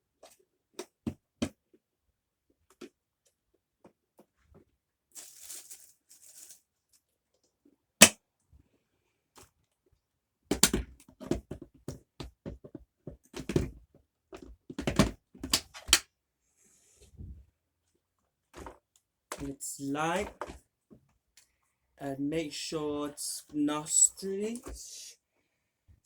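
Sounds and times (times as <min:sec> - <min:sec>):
soft rustle: 0:05.2 - 0:07.0
plastic knocks and clatters: 0:10.5 - 0:16.0, 0:18.5 - 0:19.5.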